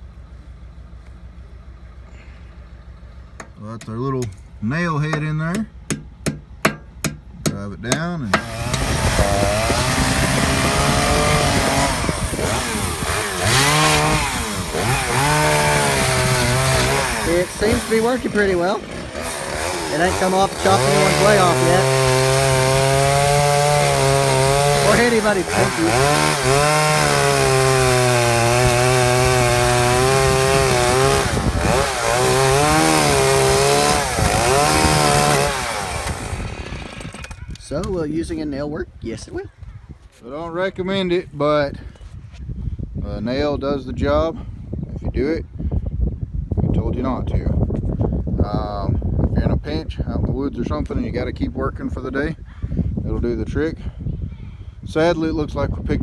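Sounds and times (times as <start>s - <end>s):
chainsaw revving: 8.2s - 37.6s.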